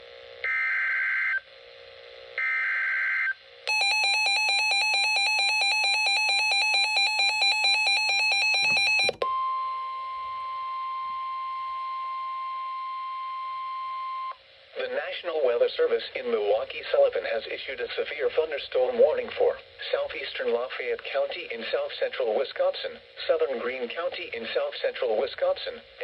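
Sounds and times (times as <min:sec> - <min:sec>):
electronic alarm beeping: 0:03.7 - 0:09.9
steady warning tone: 0:03.7 - 0:10.8.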